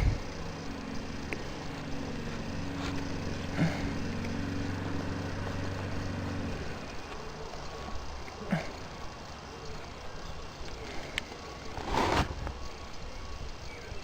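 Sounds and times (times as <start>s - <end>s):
faint clicks: 10.6s - 11.6s.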